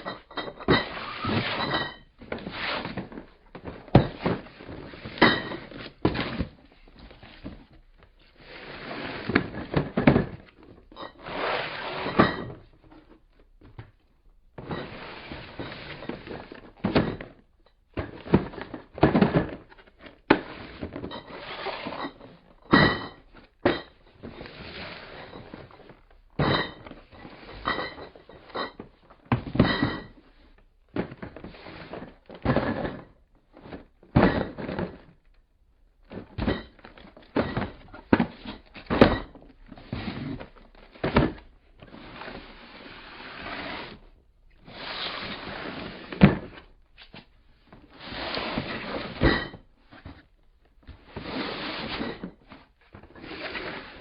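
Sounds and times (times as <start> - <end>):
glass bottles clinking: 27.6 - 28.8.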